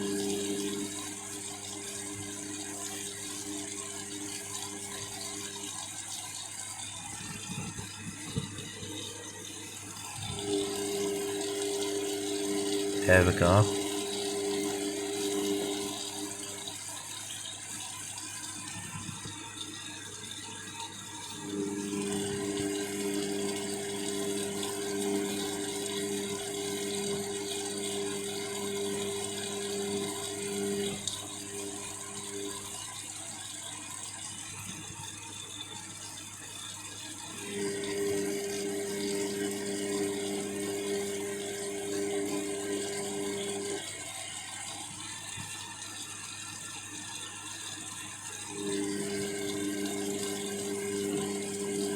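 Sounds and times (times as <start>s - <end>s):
washing machine tumbling laundry: 21.5s - 32.8s, 48.6s - 51.9s.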